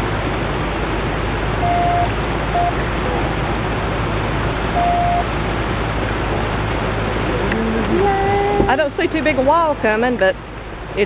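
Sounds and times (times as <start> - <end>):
river rushing: 0.0 - 11.0
whistle-like tones: 1.6 - 2.8.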